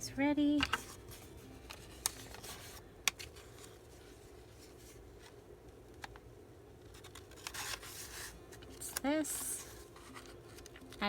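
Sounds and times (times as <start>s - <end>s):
paper rustling: 0.7s - 5.4s, 6.9s - 10.8s.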